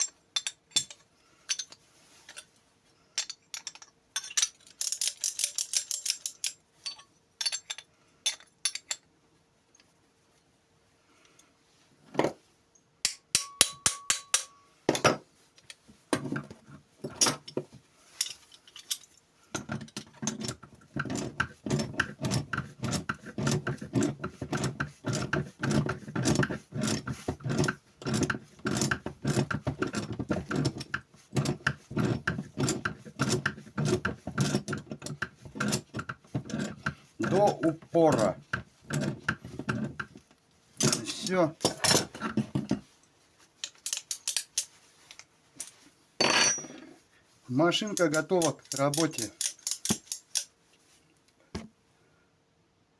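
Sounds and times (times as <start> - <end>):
metal clinks: 3.2 - 9.1, 45.6 - 46.9.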